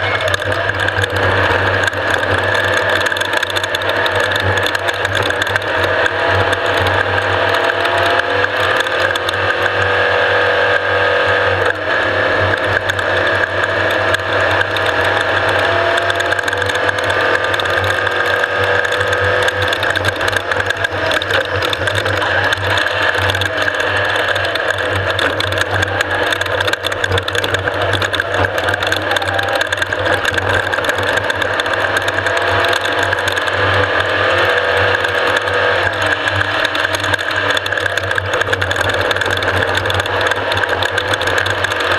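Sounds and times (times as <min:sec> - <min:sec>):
dense rattle and clatter: 0:00.0 - 0:41.9
off-road vehicle engine at speed: 0:00.0 - 0:41.9.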